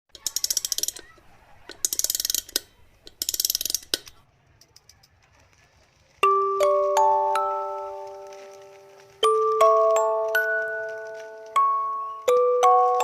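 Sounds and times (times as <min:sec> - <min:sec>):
chiming mallet percussion music: 0:06.2 - 0:08.6, 0:09.2 - 0:13.0.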